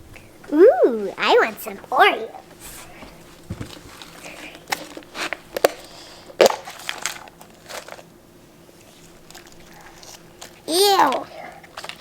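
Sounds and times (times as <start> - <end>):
cookies crunching: 3.7 - 8.1, 8.8 - 12.0.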